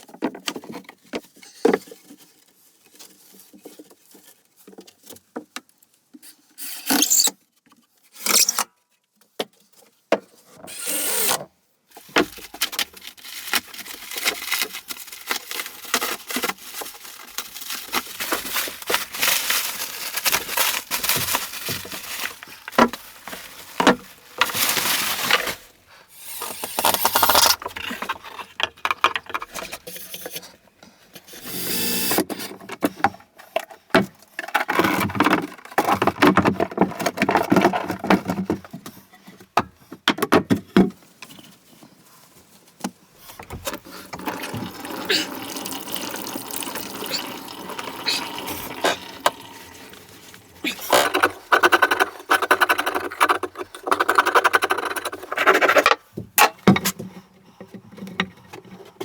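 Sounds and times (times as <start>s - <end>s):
scraping and rasping wood: 48.8s - 56.0s.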